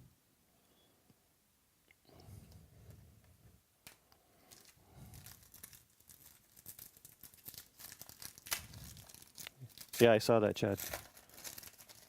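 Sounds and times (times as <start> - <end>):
foil wrapper crinkling: 4.4 - 12.0.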